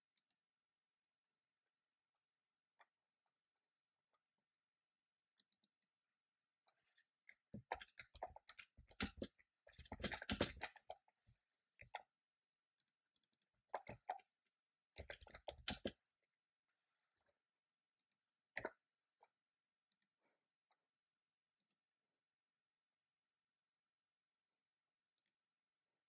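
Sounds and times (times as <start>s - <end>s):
computer keyboard typing: 7.8s - 10.9s, 15.0s - 16.0s.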